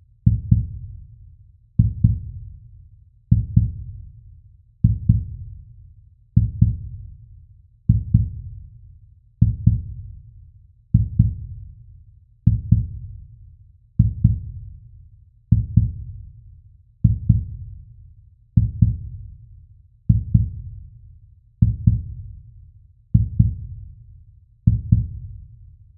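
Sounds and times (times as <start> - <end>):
slow heartbeat thumps: 0.3 - 1.0, 1.8 - 2.4, 3.3 - 4.0, 4.8 - 5.4, 6.4 - 7.0, 7.9 - 8.6, 9.4 - 10.0, 10.9 - 11.6, 12.5 - 13.1, 14.0 - 14.6, 15.5 - 16.2, 17.0 - 17.7, 18.6 - 19.3, 20.1 - 20.8, 21.6 - 22.2, 23.2 - 23.8, 24.7 - 25.3.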